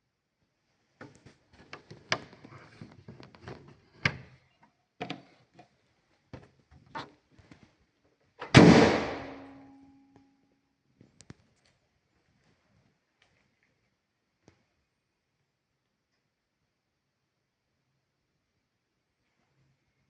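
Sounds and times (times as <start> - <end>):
loud ringing slam: 8.6 - 9.8.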